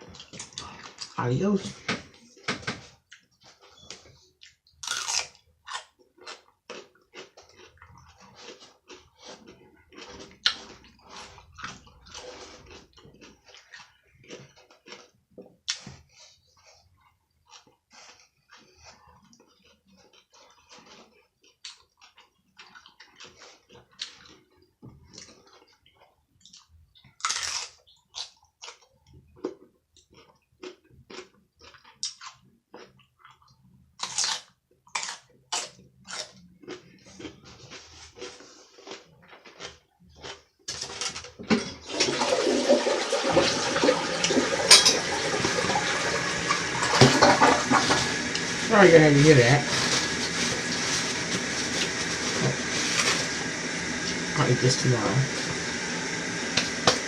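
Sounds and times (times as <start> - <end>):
person chewing and eating: 0.0 - 41.9, 44.2 - 57.0
toilet flushing and refilling: 41.5 - 57.0.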